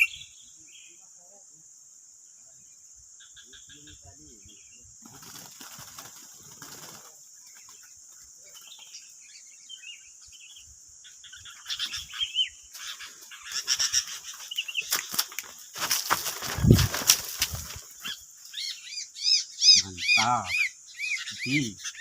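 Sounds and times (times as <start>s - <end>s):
bird chirping calls: 0.0s - 1.0s, 3.2s - 22.0s
rustling and flapping: 5.1s - 7.2s, 14.3s - 18.2s.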